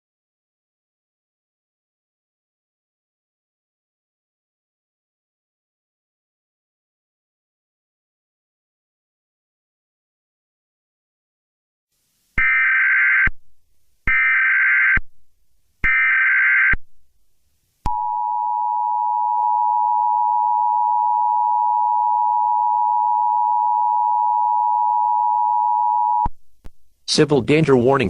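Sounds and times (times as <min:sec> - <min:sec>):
steady two-tone attention signal: 0:17.9 - 0:26.3.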